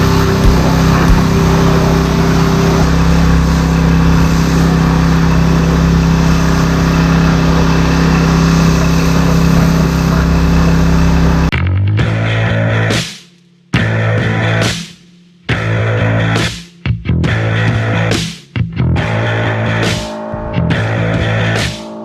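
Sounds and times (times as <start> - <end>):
farm machine engine droning: 0.0 - 11.5.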